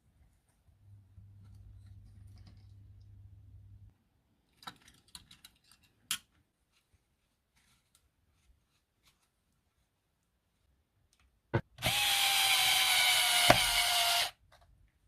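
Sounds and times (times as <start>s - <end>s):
low steady hum: 0.0s - 3.9s.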